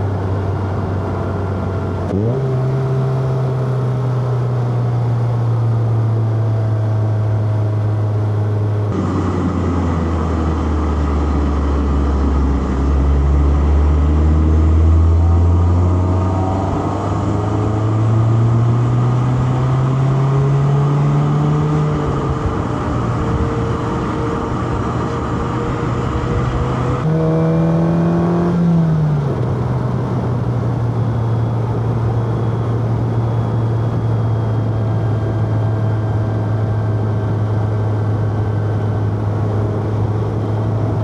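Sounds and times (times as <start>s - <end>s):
car engine accelerating: 0.0s - 41.0s
tyre and road noise: 8.8s - 41.0s.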